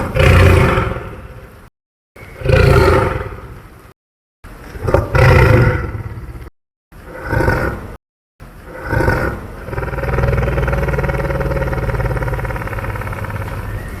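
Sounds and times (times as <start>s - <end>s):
dinosaur roar: 0.0s - 1.2s, 2.4s - 3.4s, 7.1s - 8.0s, 8.6s - 13.9s
low rumbling growl: 4.7s - 8.0s, 8.6s - 14.0s.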